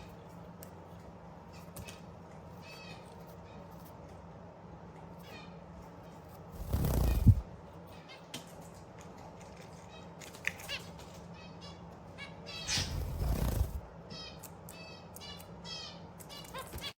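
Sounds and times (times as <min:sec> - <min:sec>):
finches chirping: 0:05.2 - 0:08.2, 0:11.3 - 0:16.8.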